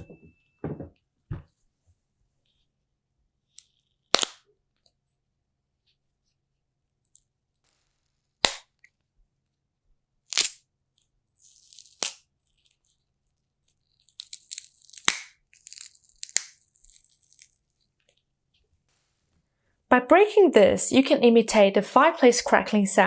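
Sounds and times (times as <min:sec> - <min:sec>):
fibrous crackling and tearing: 0:11.4 - 0:13.0, 0:13.6 - 0:17.8
celery stalks snapping: 0:14.1 - 0:17.5.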